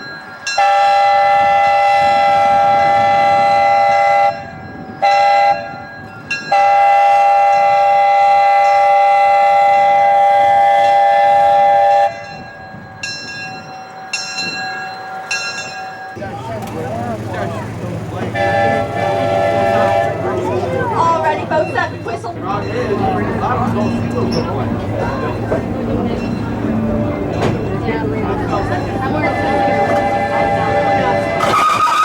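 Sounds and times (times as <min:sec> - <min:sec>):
steam locomotive whistle: 0:00.6 - 0:05.8, 0:06.5 - 0:12.3, 0:18.2 - 0:20.8, 0:28.9 - 0:32.0.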